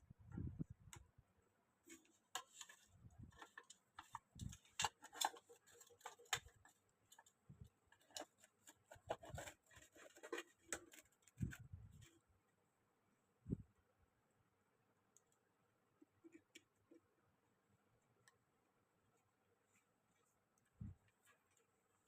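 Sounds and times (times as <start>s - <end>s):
fan parts clicking and tapping: 1.9s - 12.2s.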